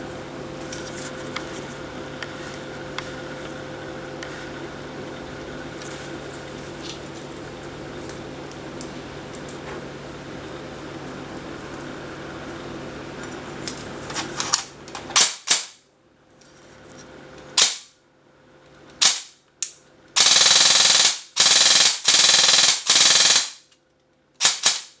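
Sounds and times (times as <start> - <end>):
steady low hum: 0.0 - 23.6
airsoft rifle shots: 15.2 - 15.8, 17.6 - 17.9, 19.0 - 19.3, 20.2 - 23.6, 24.4 - 25.0
airsoft rifle full-auto bursts: 20.2 - 23.6, 24.4 - 25.0.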